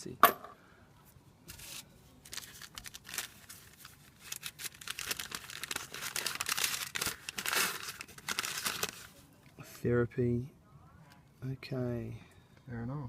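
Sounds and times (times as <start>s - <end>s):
papers rustling and crinkling: 1.5s - 9.3s.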